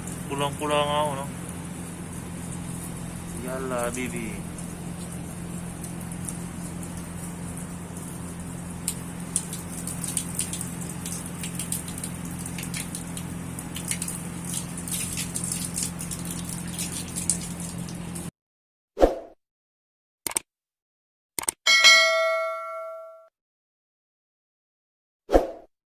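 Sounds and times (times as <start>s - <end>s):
water running and spattering: 0.0s - 0.9s, 2.0s - 18.3s
steady low hum: 0.0s - 18.1s
short chime: 21.7s - 23.3s.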